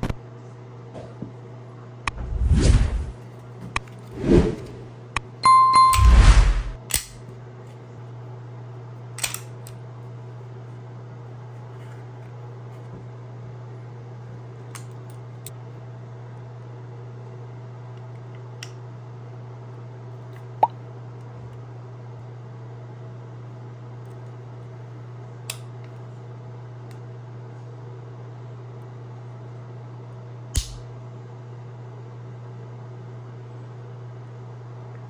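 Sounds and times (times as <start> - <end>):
steady low hum: 0.0 - 7.4
rising and falling whoosh: 2.1 - 3.2, 4.1 - 4.9, 5.9 - 6.8
brief high ring: 5.4 - 6.8
sharp click: 30.6 - 30.8.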